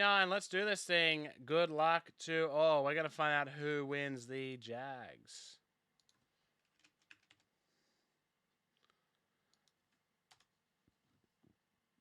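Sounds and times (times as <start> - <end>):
keyboard and mouse clicks: 6.0 - 7.5, 8.8 - 10.6.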